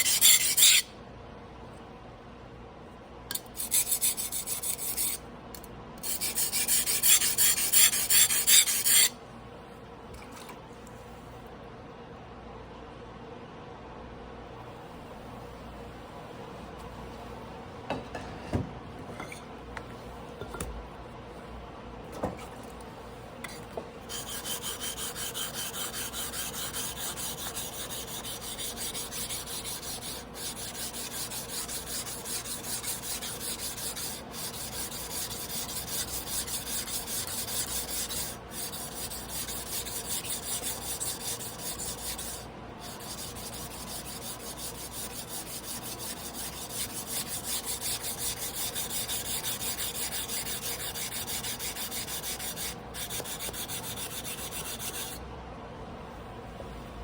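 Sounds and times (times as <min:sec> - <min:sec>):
knife scraping on whetstone: 0:00.0 - 0:00.9, 0:03.3 - 0:05.2, 0:06.0 - 0:09.1, 0:23.5 - 0:55.2.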